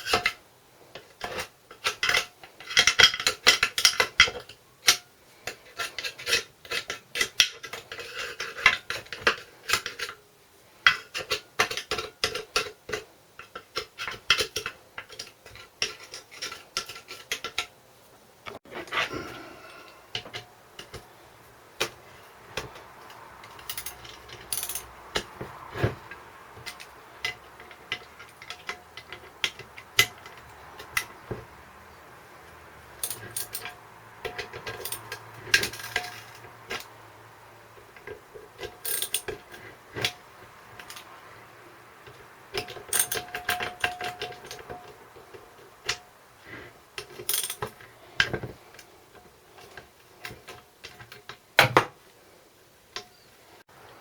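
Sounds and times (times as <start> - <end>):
hand tools and metal parts clinking: 0.0 - 10.2, 10.8 - 17.8, 18.7 - 51.9
metal part ringing: 23.5 - 25.3, 33.0 - 33.8, 38.8 - 39.3.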